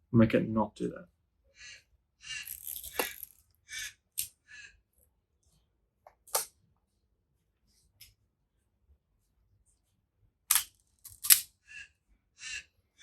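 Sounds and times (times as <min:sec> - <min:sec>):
film camera winding clicks: 0:10.5 - 0:11.4.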